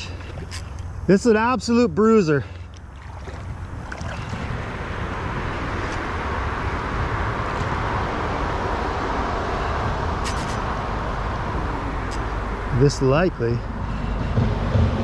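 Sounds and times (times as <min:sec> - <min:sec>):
flowing creek water: 0:00.0 - 0:14.8
wind buffeting microphone: 0:02.8 - 0:15.0.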